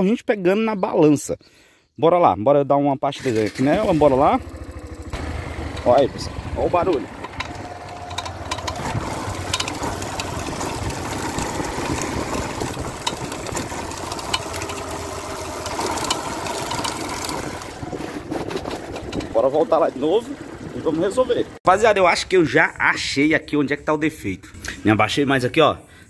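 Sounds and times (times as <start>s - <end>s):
motorcycle engine running: 3.5s - 21.6s
chain knocking and rattling: 6.8s - 17.4s.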